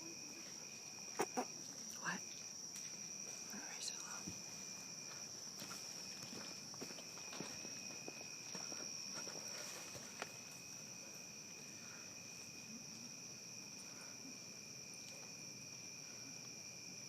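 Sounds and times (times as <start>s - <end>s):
crickets chirring: 0.0s - 17.0s
faint scuffing: 4.3s - 10.7s.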